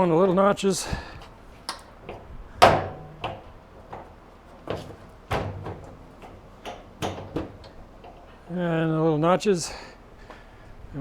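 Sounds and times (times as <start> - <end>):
sheet metal panels knocking: 1.7 - 8.4.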